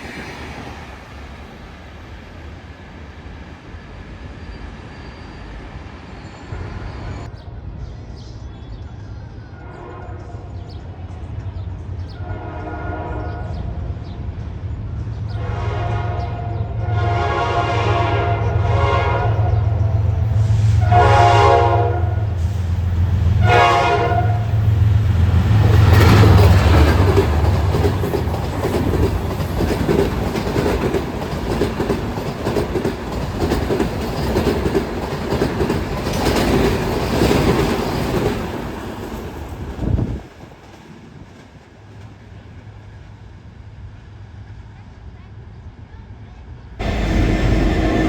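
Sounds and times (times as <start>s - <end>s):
train horn: 9.6s - 10.6s, 12.1s - 13.8s, 15.3s - 22.6s, 23.2s - 25.0s, 46.8s - 48.0s
train wheels clattering: 24.5s - 42.2s
diesel engine rumble: 46.8s - 48.0s.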